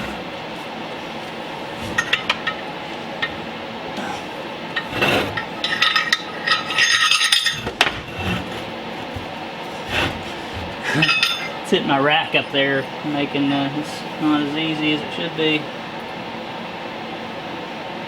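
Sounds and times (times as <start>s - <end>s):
steel parts clinking and knocking: 0.0s - 11.7s
metal scraping: 0.0s - 14.5s.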